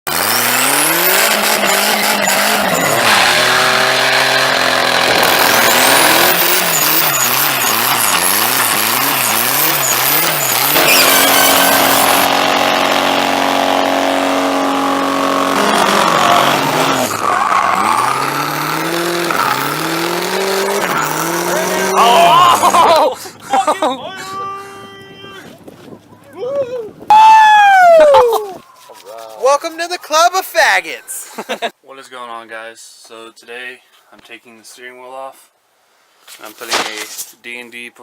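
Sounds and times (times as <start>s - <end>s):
tyres squealing: 0.1s - 13.0s, 15.4s - 22.9s
car engines revving hard: 0.1s - 23.0s.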